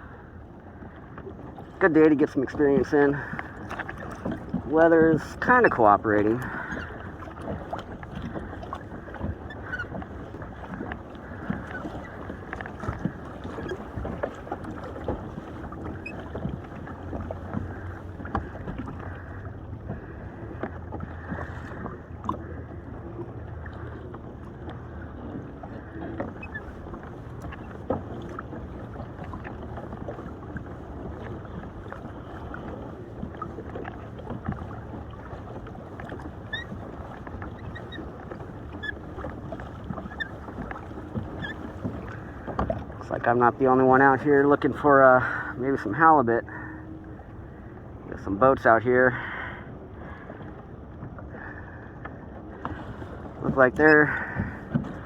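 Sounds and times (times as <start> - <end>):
water slapping against boat hull: 0.8 - 55.0
small knocks against boat: 2.7 - 44.9, 52.0 - 55.0.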